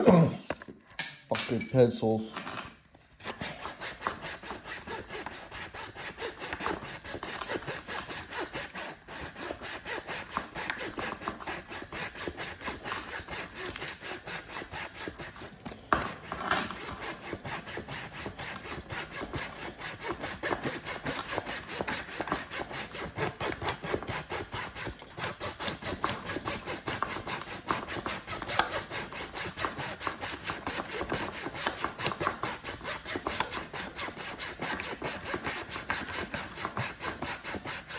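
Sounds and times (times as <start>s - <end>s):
handsaw cutting wood: 3.2s - 37.9s.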